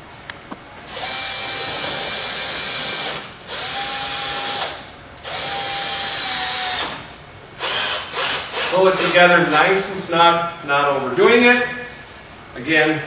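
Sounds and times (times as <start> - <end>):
screw gun driving screw: 7.6 - 9.2.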